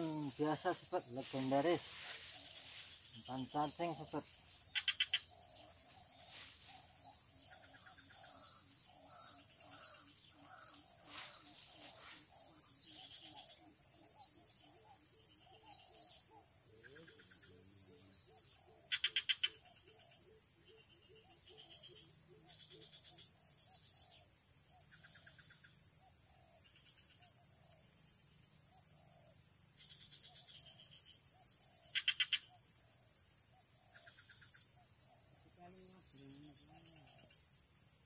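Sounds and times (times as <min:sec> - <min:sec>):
steady high hiss: 0:00.0 - 0:07.2.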